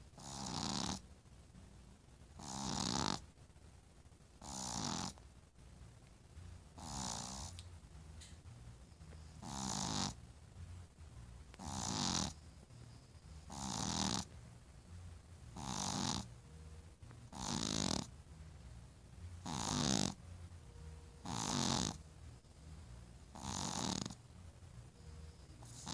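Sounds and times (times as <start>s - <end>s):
person snoring: 0.2s - 1.0s, 2.4s - 3.2s, 9.4s - 10.2s, 11.6s - 12.4s, 13.5s - 14.3s, 15.6s - 16.3s, 17.3s - 18.1s, 19.4s - 20.2s, 21.3s - 22.0s, 23.4s - 24.2s.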